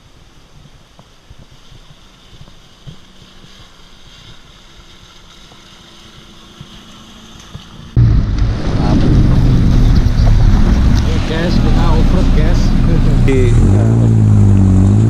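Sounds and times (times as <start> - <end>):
off-road vehicle engine running: 0.9 - 15.0
faint low rumble: 7.9 - 14.8
voices: 8.5 - 14.1.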